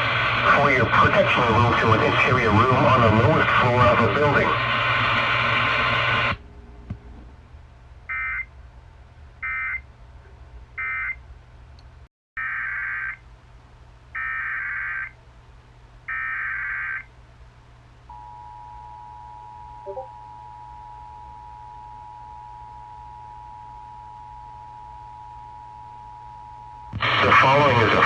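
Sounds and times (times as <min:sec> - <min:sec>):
two-tone attention signal: 0:18.1 - 0:20.9
warbling data tone bursts: 0:19.8 - 0:20.1.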